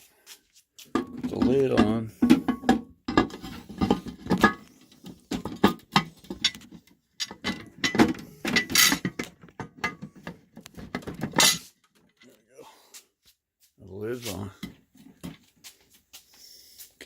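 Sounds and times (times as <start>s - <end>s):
lid clicks and knocks: 1.0s - 4.6s, 5.3s - 11.6s
lid scraping: 1.0s - 9.2s.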